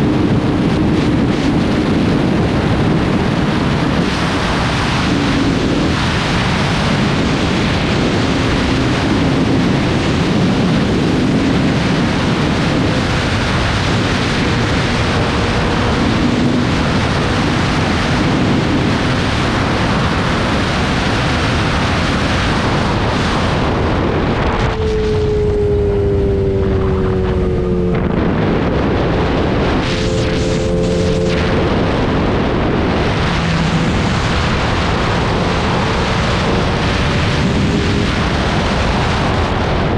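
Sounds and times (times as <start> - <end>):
wind rush on microphone: 0.0 - 39.9
motorcycle engine: 12.1 - 19.6, 23.6 - 38.4.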